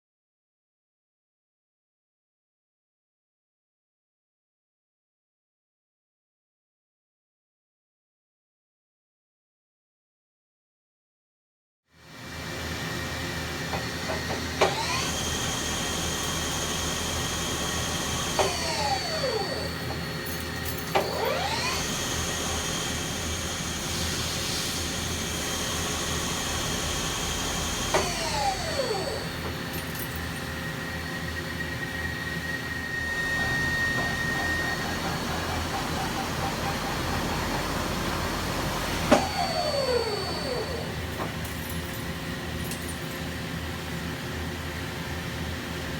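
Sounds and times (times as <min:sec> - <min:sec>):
lathe spindle whine: 0:12.4 - 0:29.7, 0:30.4 - 0:41.4
machine hum: 0:21.0 - 0:41.4.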